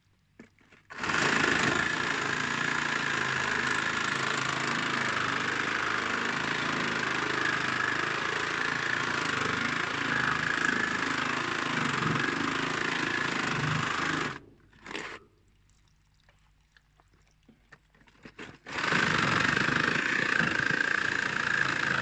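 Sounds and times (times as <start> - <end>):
power tool motor running: 0.9 - 15.0, 18.6 - 22.0.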